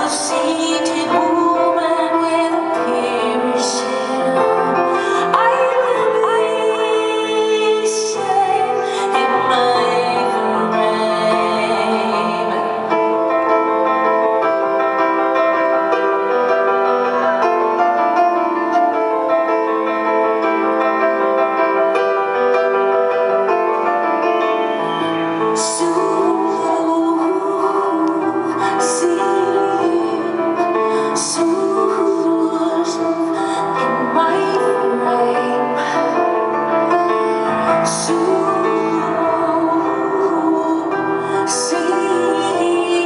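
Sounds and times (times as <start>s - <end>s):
woman singing: 0.0s - 14.2s, 25.4s - 43.0s
piano and keyboard chords: 0.0s - 43.0s.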